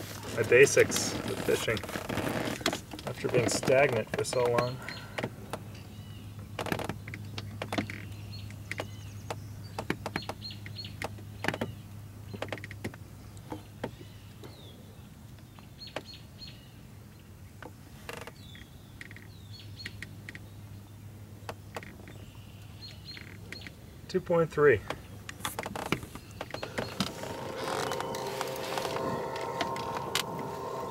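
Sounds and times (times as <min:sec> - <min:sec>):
small birds chirping: 0:03.2 - 0:12.5, 0:18.3 - 0:28.1
steady low hum: 0:25.2 - 0:30.9.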